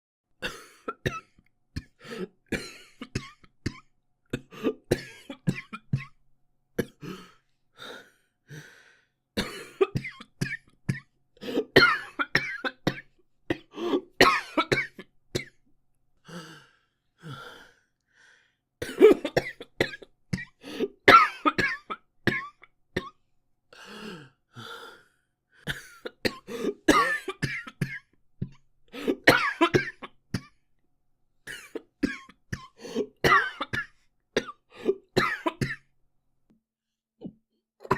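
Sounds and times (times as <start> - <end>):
boy coughing: 9.4 - 15.0, 18.8 - 23.2, 25.7 - 28.1, 29.0 - 30.5, 31.5 - 35.8.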